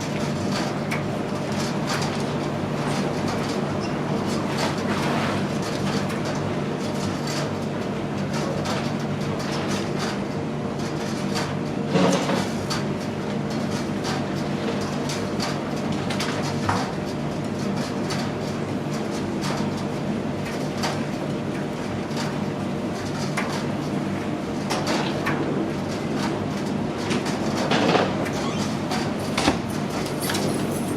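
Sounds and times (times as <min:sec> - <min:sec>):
tumble dryer drum humming: 0:23.6 - 0:30.9.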